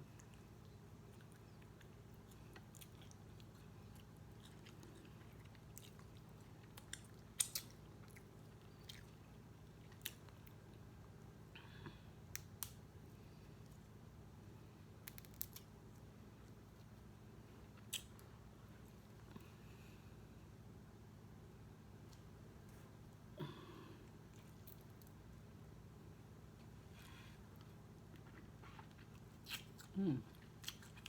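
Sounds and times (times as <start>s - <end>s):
faint steady hum: 0.0s - 31.0s
crunchy chewing: 0.1s - 10.6s, 27.6s - 31.0s.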